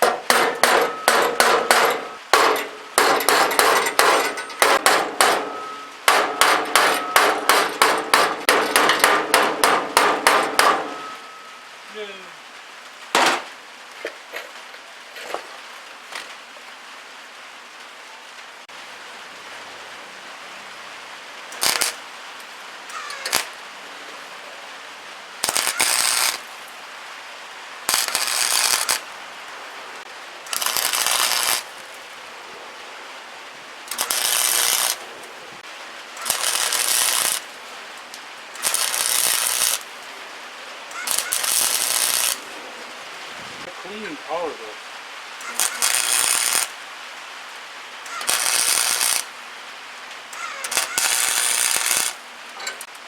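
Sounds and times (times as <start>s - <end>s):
sharp knocks: 0.0s - 11.2s, 13.1s - 13.5s
welder crackling: 0.0s - 11.3s, 12.8s - 13.7s, 21.5s - 22.0s, 22.9s - 23.6s, 25.4s - 26.5s, 27.8s - 29.1s, 30.4s - 32.0s, 33.8s - 35.2s, 36.1s - 40.0s, 40.9s - 42.5s, 45.4s - 46.8s, 48.0s - 49.4s, 50.1s - 53.0s.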